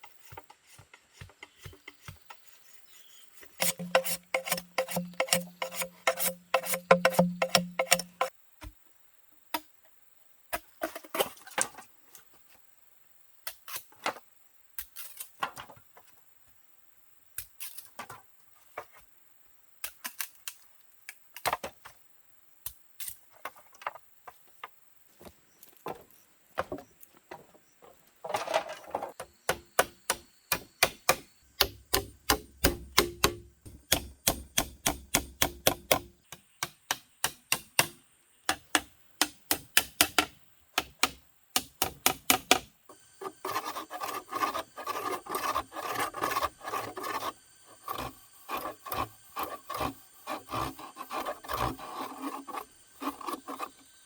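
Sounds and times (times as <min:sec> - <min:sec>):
hand saw sawing wood: 0:03.5 - 0:08.3, 0:43.2 - 0:53.8
sharp wooden knocks: 0:03.6 - 0:08.3, 0:29.5 - 0:42.7.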